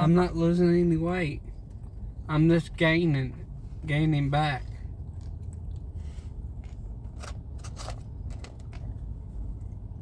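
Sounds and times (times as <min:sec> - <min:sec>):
steady low rumble: 0:00.0 - 0:10.0.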